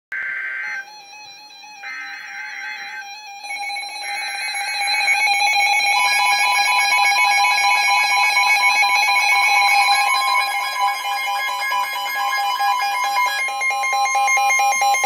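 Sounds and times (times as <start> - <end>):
two-tone alarm signal: 0.1 - 15.0
digital header buzzing screech: 0.2 - 4.8.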